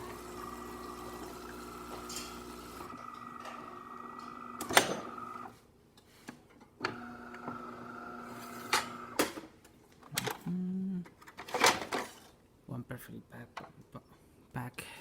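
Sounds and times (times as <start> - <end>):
espresso machine motor humming: 0.0 - 5.5.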